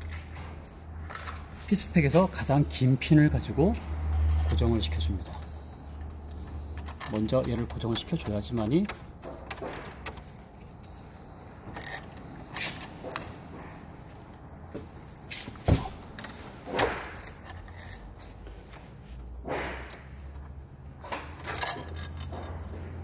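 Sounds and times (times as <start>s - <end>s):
metallic clicks of lock hardware: 4.1s - 10.3s, 21.0s - 22.8s.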